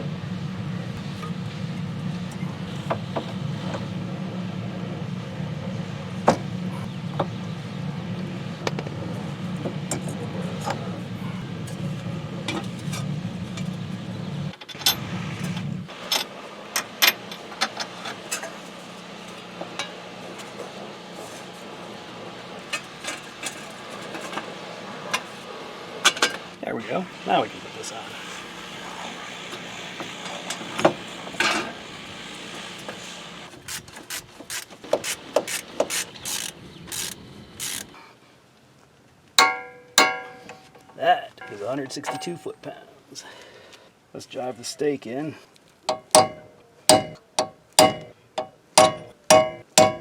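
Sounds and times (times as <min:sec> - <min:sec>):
metal tools clinking: 0:39.4 - 0:42.7.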